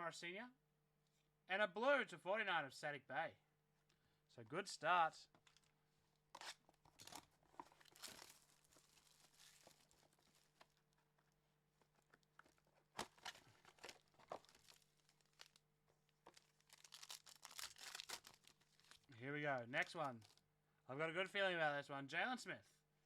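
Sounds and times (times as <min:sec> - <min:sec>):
wrapper crinkling and tearing: 0:06.4 - 0:10.8, 0:12.4 - 0:15.6, 0:16.2 - 0:19.1, 0:19.8 - 0:20.4.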